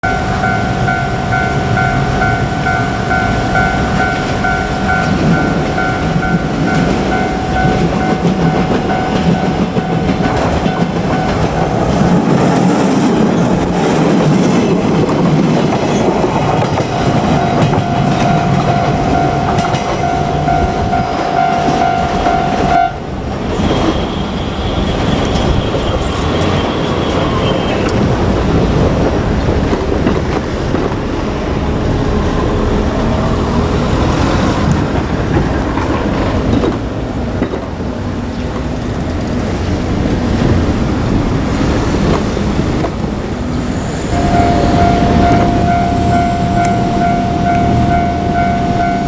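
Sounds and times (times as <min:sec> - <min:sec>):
level crossing bell ringing: 0:00.0 - 0:12.2, 0:16.5 - 0:23.0, 0:44.1 - 0:49.0
train wheels clattering over rail joints: 0:03.4 - 0:21.9, 0:24.9 - 0:43.3.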